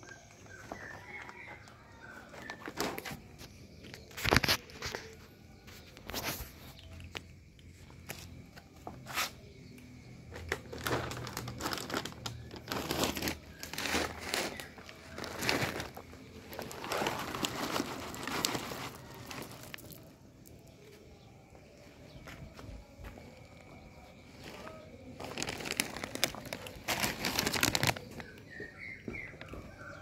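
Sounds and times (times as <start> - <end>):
plastic packaging crinkling: 10.4 - 20.6, 24.5 - 28.6.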